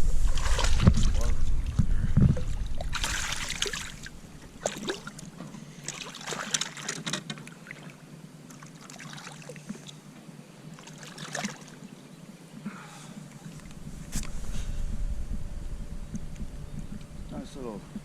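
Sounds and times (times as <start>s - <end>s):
steady low hum: 0.0s - 6.0s, 12.1s - 18.0s
water splashing against boat hull: 0.3s - 8.0s.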